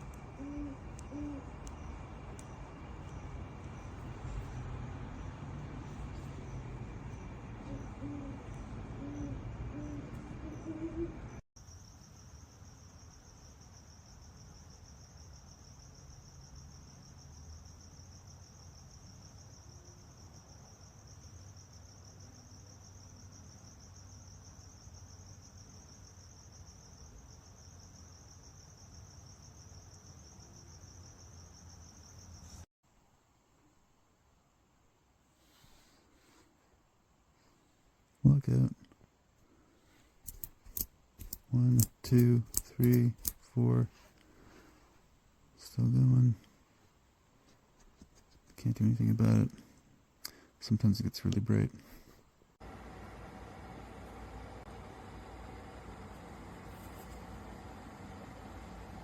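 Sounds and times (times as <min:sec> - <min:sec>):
crickets trilling: 0:00.0 - 0:32.6, 0:40.2 - 0:44.7.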